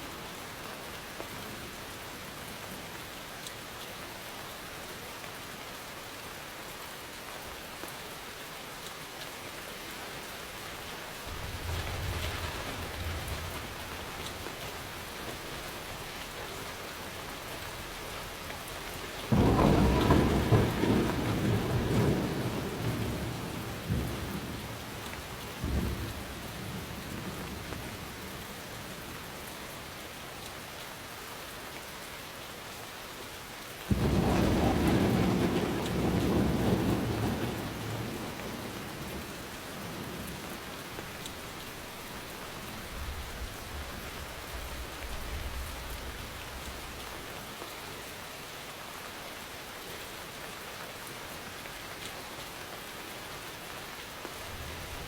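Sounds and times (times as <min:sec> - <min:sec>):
steady rain: 0:00.0 - 0:55.0
thunder rumbling: 0:11.2 - 0:28.1, 0:33.9 - 0:47.0.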